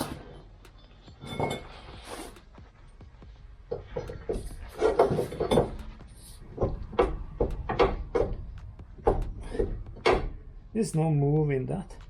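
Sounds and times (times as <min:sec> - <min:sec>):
suspension knocks and clunks: 0:00.0 - 0:10.7.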